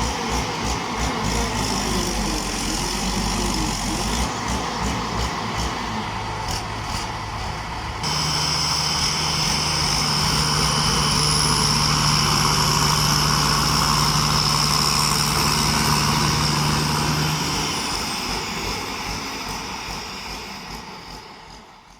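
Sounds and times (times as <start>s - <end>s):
harvester engine running: 0.0s - 21.4s
high whine: 5.8s - 21.1s.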